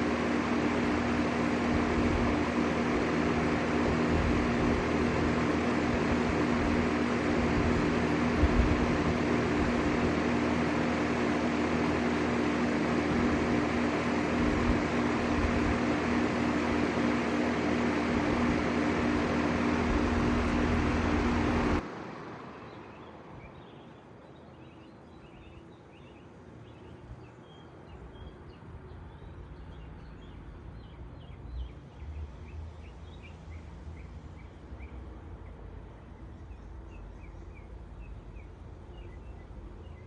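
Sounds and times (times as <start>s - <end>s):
air conditioner unit humming: 0.0s - 21.8s.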